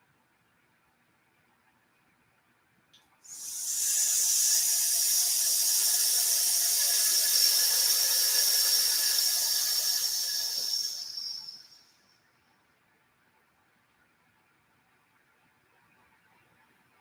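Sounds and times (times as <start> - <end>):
person hissing through teeth: 3.3 - 11.8.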